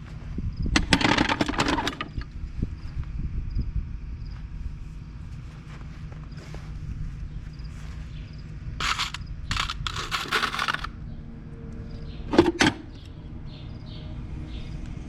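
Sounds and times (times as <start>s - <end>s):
sharp metallic clinks: 8.8s - 10.9s
tool scraping hoof: 8.8s - 10.9s.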